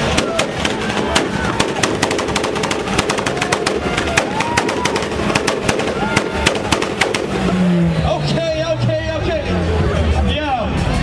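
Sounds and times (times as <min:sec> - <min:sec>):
exhaust popping and banging: 0:00.0 - 0:08.5.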